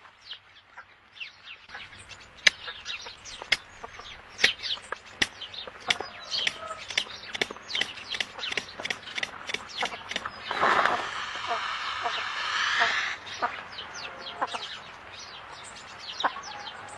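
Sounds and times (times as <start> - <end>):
birds chirping: 0.0 - 16.9
sharp clicks: 2.4 - 10.5.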